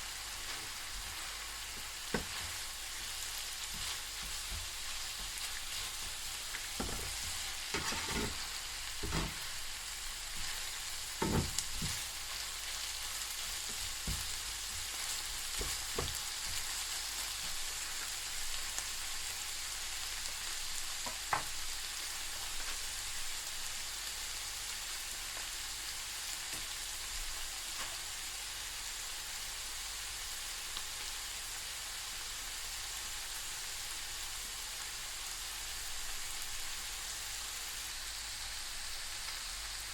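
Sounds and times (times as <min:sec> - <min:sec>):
beef sizzling in a pan: 0:00.0 - 0:39.9.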